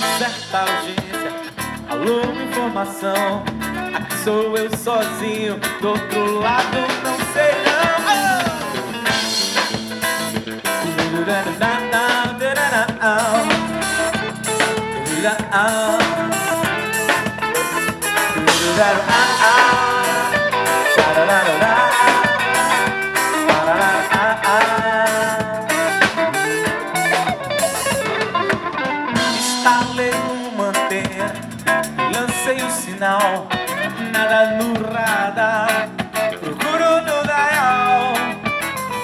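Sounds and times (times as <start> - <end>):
drums with steady beat: 0.0 - 39.0
guitar: 0.0 - 39.0
pop song instrumental: 0.0 - 39.0
melodic lead line: 6.4 - 32.8.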